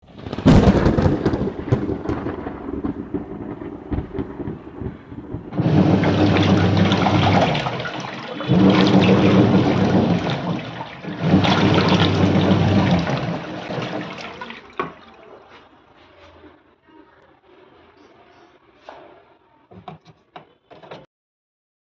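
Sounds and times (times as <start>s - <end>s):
water churning in washing machine: 0.1s - 16.4s.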